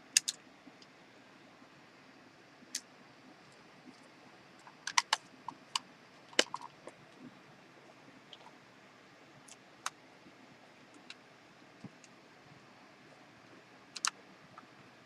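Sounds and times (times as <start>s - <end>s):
small plastic parts clicking: 0.1s - 0.4s, 4.6s - 6.8s, 13.9s - 14.2s.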